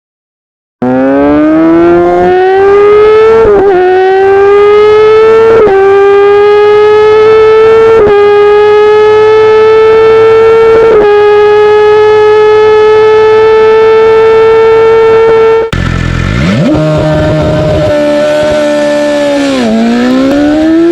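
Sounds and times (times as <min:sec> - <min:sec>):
motorcycle engine revving: 0:00.8 - 0:20.9.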